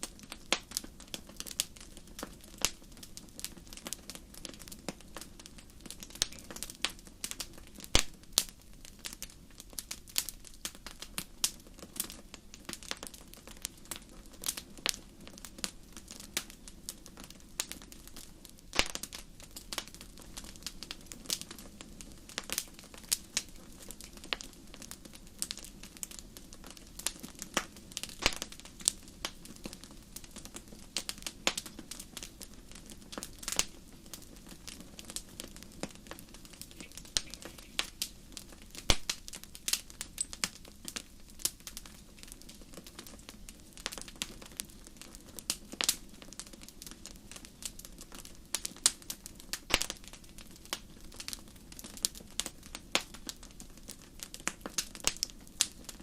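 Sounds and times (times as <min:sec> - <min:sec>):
fire popping and snapping: 0:00.0 - 0:56.0
wood fire crackling: 0:00.0 - 0:56.0
low hiss and rumble: 0:17.4 - 0:44.9.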